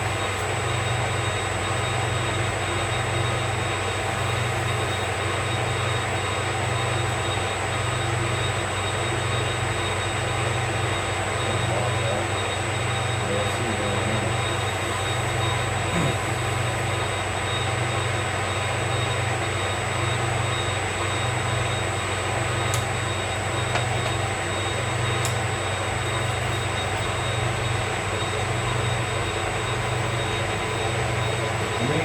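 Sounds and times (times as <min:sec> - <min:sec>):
metal lathe humming: 0:00.0 - 0:32.0
high whine: 0:06.7 - 0:18.0, 0:21.6 - 0:32.0.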